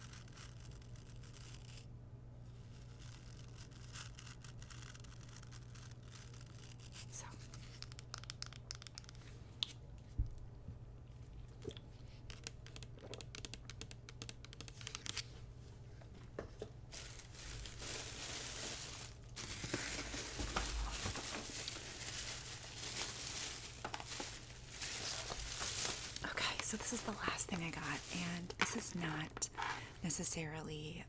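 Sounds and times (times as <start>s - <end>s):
packaging crinkling and rustling: 16.9s - 30.1s.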